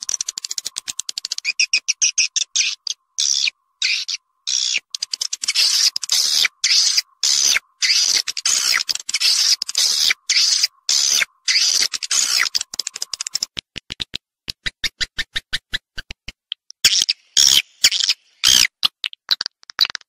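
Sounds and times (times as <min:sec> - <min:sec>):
swiftlet dry clicks: 0:00.0 - 0:01.5, 0:04.9 - 0:06.4, 0:11.7 - 0:13.5
swiftlet twittering chirps: 0:00.0 - 0:13.1.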